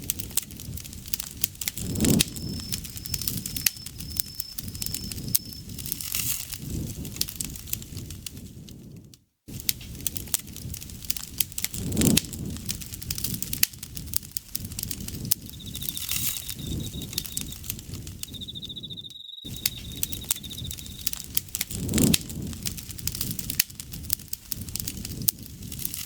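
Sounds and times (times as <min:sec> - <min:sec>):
low rumble of flames: 0:00.0 - 0:26.0
wood fire crackling and popping: 0:00.0 - 0:26.0
high-pitched insect trill: 0:01.8 - 0:05.8, 0:15.4 - 0:21.3.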